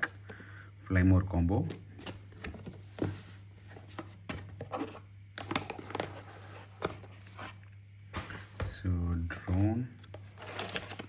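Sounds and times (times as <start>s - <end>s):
packaging rustling: 10.1s - 11.0s.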